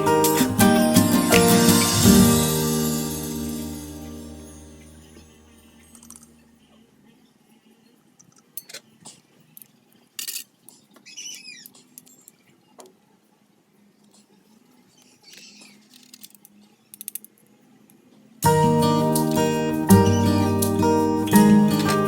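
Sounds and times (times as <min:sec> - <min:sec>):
loud guitar music: 0:00.0 - 0:05.6, 0:18.5 - 0:22.0
small metal parts clinking: 0:05.8 - 0:06.4, 0:10.2 - 0:10.8, 0:15.8 - 0:17.4.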